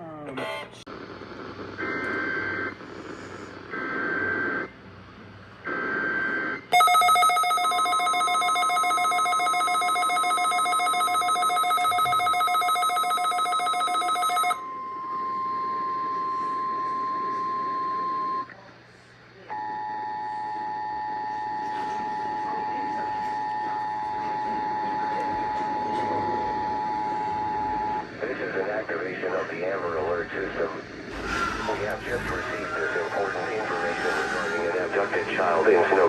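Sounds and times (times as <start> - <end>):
buzzing electronic alarm tone: 0.4 - 4.8, 5.7 - 18.5, 31.1 - 36.0
steady warning alarm tone: 5.7 - 18.5, 19.5 - 28.8, 29.8 - 36.0
data header tones: 31.2 - 36.0.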